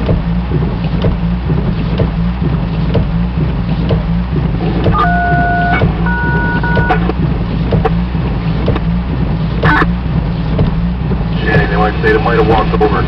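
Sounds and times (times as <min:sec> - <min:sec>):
aircraft cabin drone: 0:00.0 - 0:13.0
electronic two-note beeps: 0:04.9 - 0:07.1.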